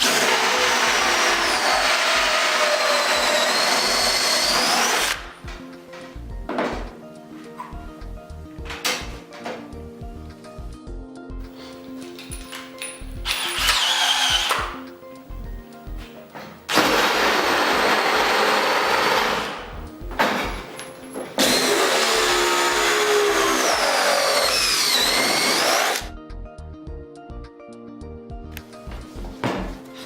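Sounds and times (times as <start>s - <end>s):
power tool motor running: 0.0s - 5.2s, 13.3s - 14.7s, 21.4s - 26.1s
background music: 0.0s - 30.0s.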